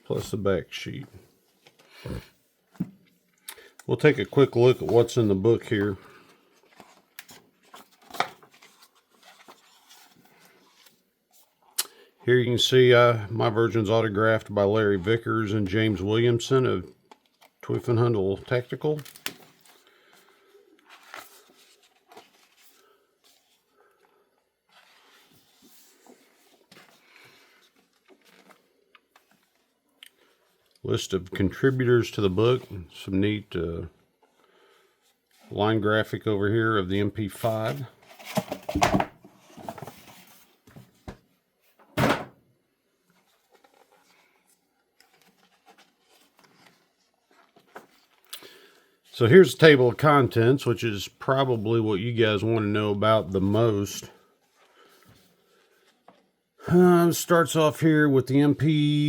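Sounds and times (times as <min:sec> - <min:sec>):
book pages rustling and turning: 0:04.0 - 0:11.8, 0:17.0 - 0:30.8, 0:37.4 - 0:41.4, 0:42.9 - 0:50.2, 0:53.3 - 0:56.5.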